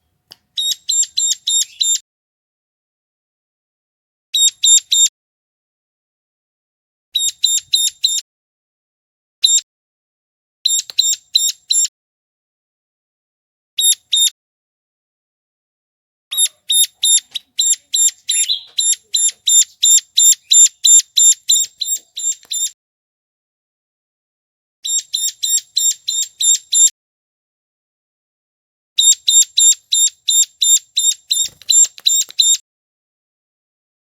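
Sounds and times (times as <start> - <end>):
bird calling sharp high notes: 16.3 - 22.8.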